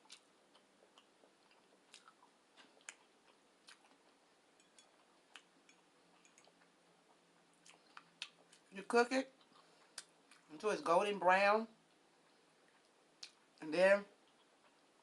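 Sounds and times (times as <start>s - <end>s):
mouth chewing clicks and smacks: 0.0s - 4.2s, 5.3s - 8.7s.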